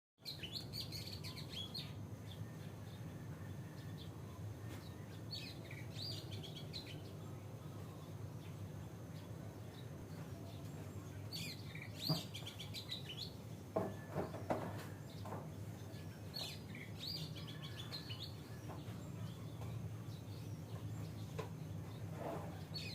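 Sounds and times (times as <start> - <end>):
bird singing whistles and chirps: 0.2 - 2.8, 15.9 - 19.6
steady low hum: 0.3 - 22.8.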